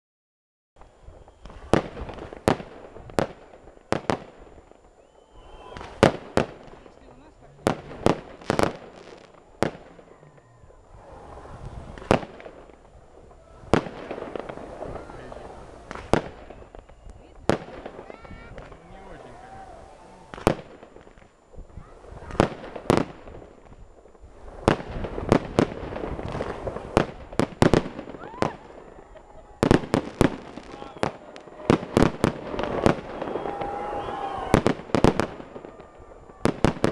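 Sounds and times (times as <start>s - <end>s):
fireworks bursting with sharp bangs: 0.8s - 36.9s
thin rising whistle: 4.9s - 6.0s, 10.0s - 11.9s, 16.3s - 17.4s, 28.1s - 34.8s
people's voices: 9.8s - 12.2s, 12.8s - 20.6s, 21.6s - 22.8s, 26.3s - 36.8s.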